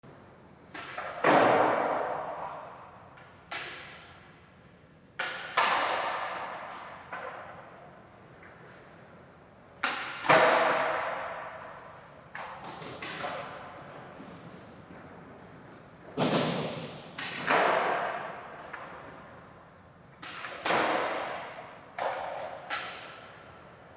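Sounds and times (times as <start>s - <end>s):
skateboard hitting ground: 0.7s - 2.7s, 5.2s - 7.6s, 9.8s - 14.6s, 16.1s - 19.4s, 20.2s - 23.5s.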